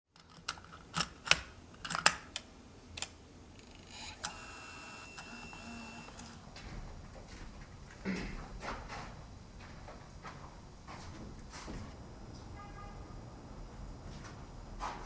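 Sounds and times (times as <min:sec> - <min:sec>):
faint high-pitched whine: 0:03.4 - 0:06.4.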